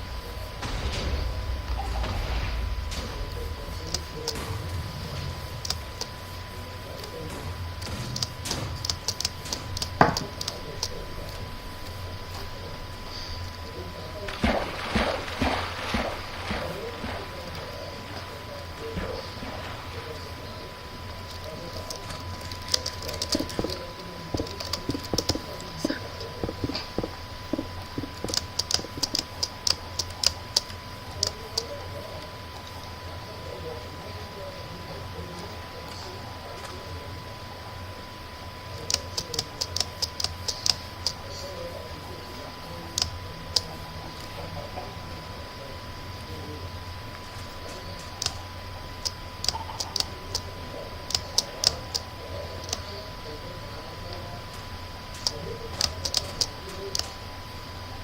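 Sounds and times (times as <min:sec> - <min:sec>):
faint steady tone: 0:00.0 - 0:58.0
low hum: 0:00.0 - 0:58.0
sharp light clicks: 0:00.6 - 0:04.6, 0:05.4 - 0:06.2, 0:07.0 - 0:12.5, 0:21.3 - 0:31.8, 0:38.8 - 0:41.2, 0:48.0 - 0:48.4, 0:49.0 - 0:50.5, 0:51.1 - 0:52.9, 0:55.2 - 0:57.2.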